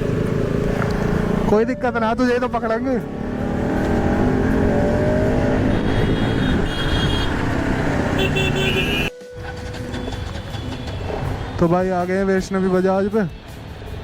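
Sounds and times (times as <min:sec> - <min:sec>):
motorcycle engine: 0:00.0 - 0:11.6
vehicle horns honking: 0:05.3 - 0:11.6.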